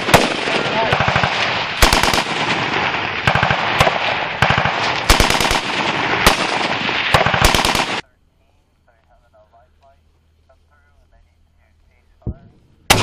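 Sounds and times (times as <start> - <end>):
loud single gunshots: 0.0 - 8.0
machine-gun fire: 0.0 - 8.0.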